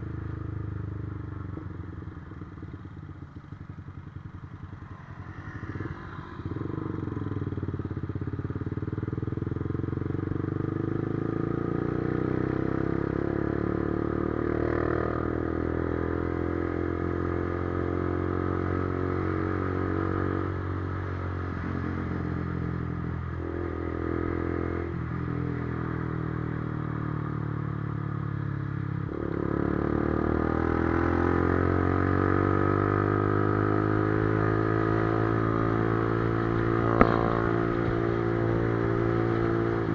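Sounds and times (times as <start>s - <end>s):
motorcycle engine shifting gears: 32.8s - 39.9s.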